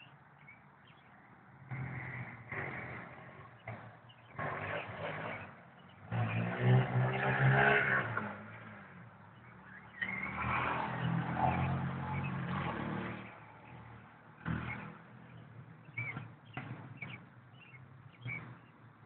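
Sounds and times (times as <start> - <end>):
vehicle engine passing by: 1.7 - 15.1.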